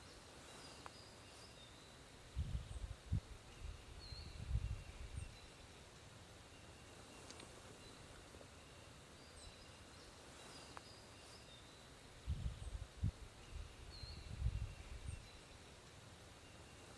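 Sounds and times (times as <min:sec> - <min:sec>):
wind rumbling on microphone: 0:02.2 - 0:05.5, 0:12.2 - 0:15.4.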